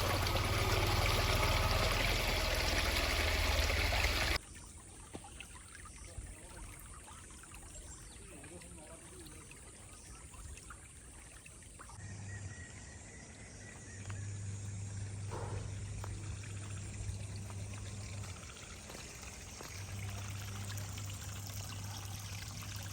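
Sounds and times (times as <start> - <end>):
low hum: 0.0 - 4.4, 13.9 - 18.5
rainwater pouring and trickling: 0.0 - 12.0, 15.0 - 22.9.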